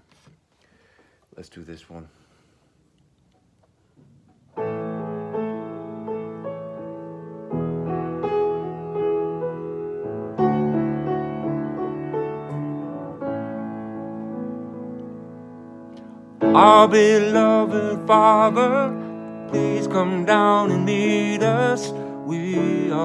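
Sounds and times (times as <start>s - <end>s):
keyboard playing sustained chords: 4.6s - 23.0s.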